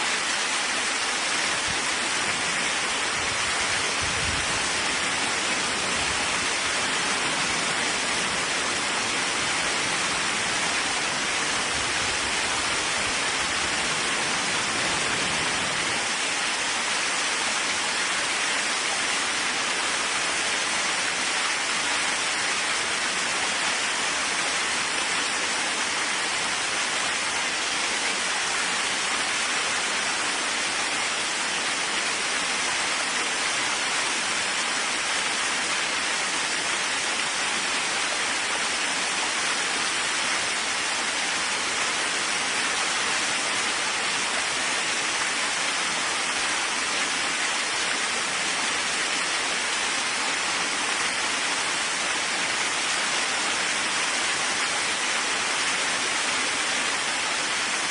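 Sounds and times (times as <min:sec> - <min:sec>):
heavy rain hiss: 0:00.0 - 0:57.9.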